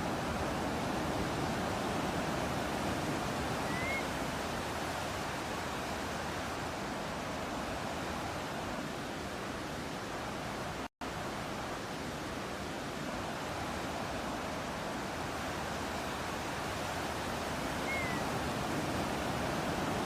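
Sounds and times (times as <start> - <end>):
ocean surf: 0.0 - 20.0
rising bird chirp: 3.6 - 4.1, 17.8 - 18.2.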